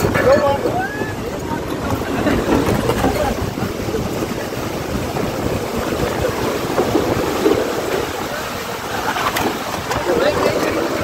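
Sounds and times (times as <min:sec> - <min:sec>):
heavy rain: 0:00.0 - 0:11.0
wind buffeting microphone: 0:00.0 - 0:11.0.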